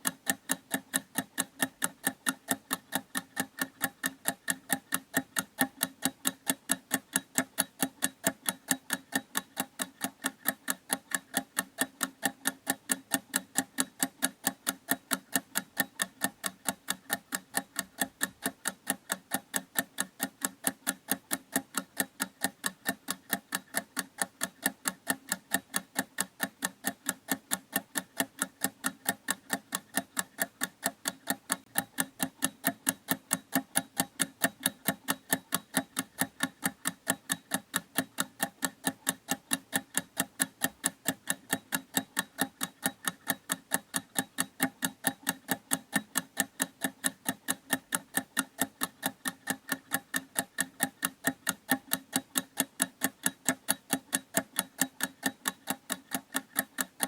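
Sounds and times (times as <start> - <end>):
clock ticking: 0.0 - 57.0.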